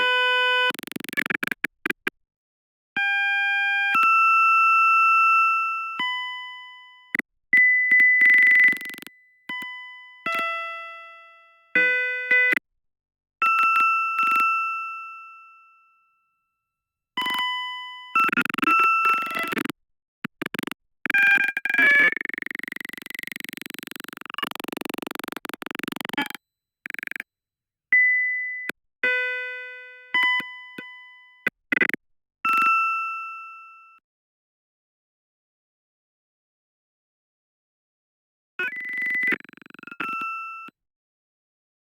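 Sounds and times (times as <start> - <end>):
electronic beeps: 7.6 - 9.7, 18.2 - 19.7, 20.3 - 27.2
clicks: 7.9 - 10.4, 18.2 - 27.3.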